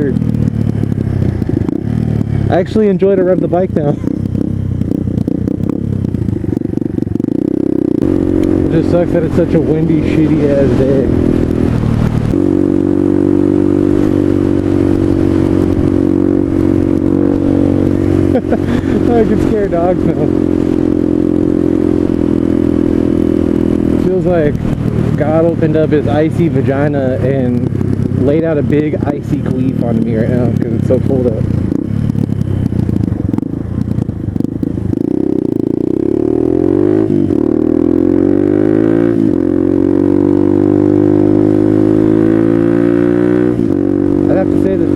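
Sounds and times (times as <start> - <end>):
motorcycle engine running: 0.0 - 44.9.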